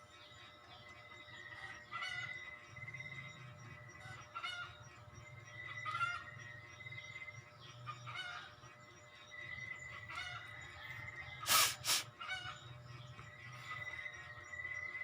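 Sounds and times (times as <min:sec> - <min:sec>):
loud hissing blasts: 0:11.5 - 0:12.1
fowl honking: 0:11.5 - 0:12.7.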